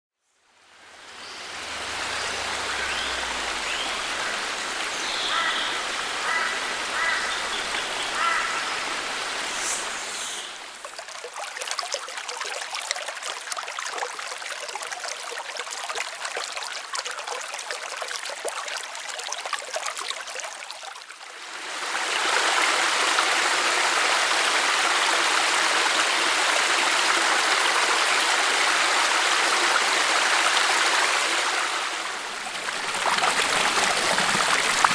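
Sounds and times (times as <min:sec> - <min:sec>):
creek water running: 0:00.4 - 0:34.9
rush of falling water: 0:00.4 - 0:34.9
crackling trickle: 0:00.5 - 0:21.4, 0:32.2 - 0:34.9.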